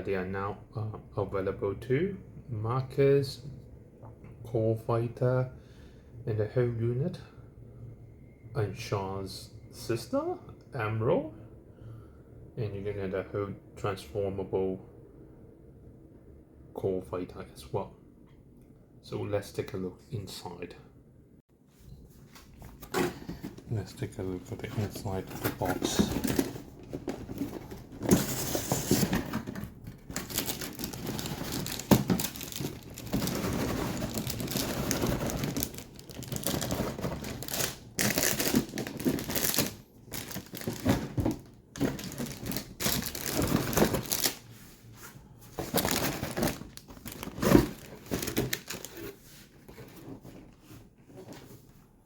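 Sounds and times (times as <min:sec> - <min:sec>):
plastic bags crinkling: 0:24.7 - 0:44.4, 0:45.6 - 0:49.2.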